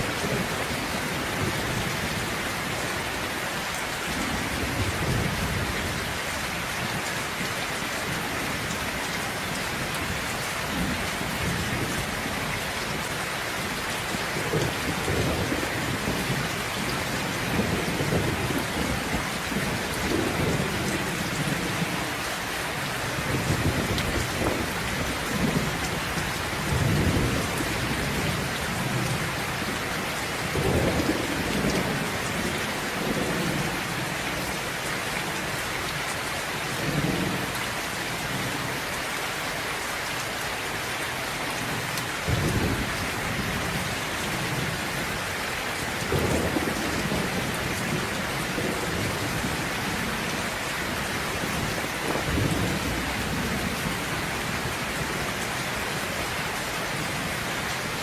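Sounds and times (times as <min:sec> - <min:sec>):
steady rain falling: 0:00.0 - 0:58.0
thunder rumbling: 0:22.8 - 0:34.1.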